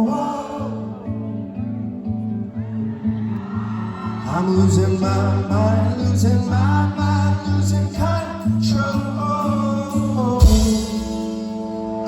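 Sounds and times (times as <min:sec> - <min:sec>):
man singing: 0:00.0 - 0:01.3, 0:04.2 - 0:12.0
rock band playing live: 0:10.3 - 0:12.0
heavy low hit: 0:10.4 - 0:11.7.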